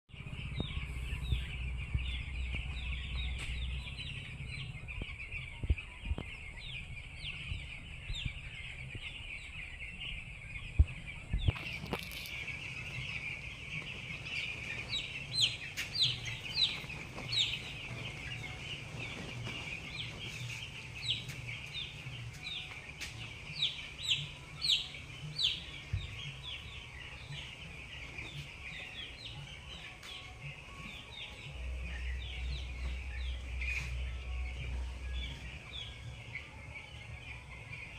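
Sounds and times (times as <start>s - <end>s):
chicks peeping: 0.1s - 37.9s.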